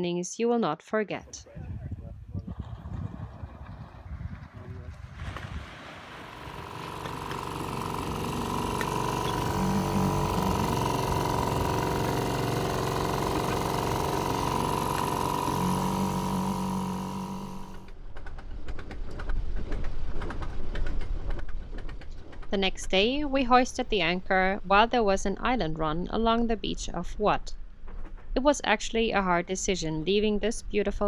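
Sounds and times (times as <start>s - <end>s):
outboard motor running: 5.8s - 17.9s
rapid clicks: 6.2s - 17.9s.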